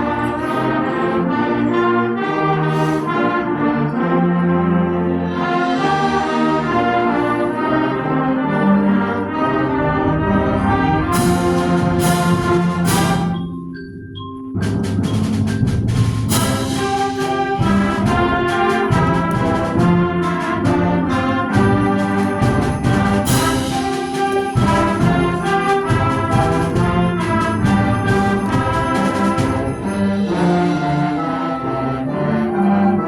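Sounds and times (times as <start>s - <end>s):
concert band playing: 0.0s - 33.0s
percussion strikes: 9.3s - 32.2s.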